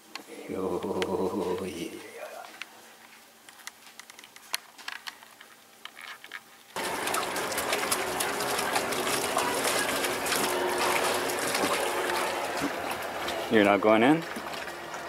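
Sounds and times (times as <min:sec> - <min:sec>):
running and splashing water: 0:06.8 - 0:15.0.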